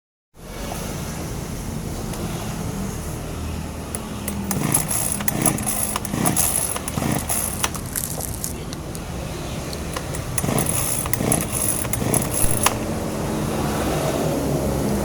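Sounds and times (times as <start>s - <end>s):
chainsaw engine sputtering: 3.9s - 9.0s, 9.6s - 13.1s.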